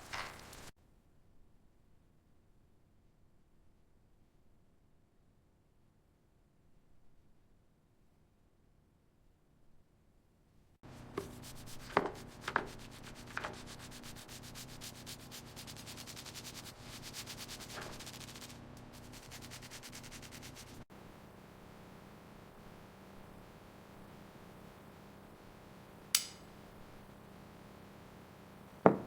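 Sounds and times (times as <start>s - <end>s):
fast rubbing or scraping: 10.9s - 20.8s.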